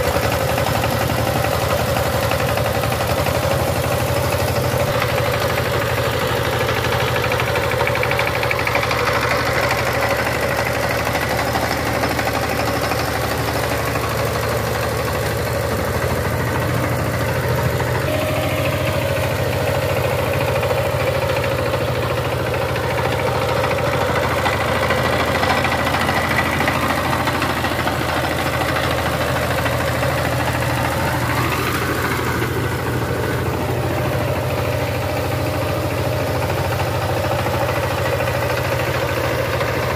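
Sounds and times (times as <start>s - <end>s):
diesel engine idling: 0.0s - 39.9s.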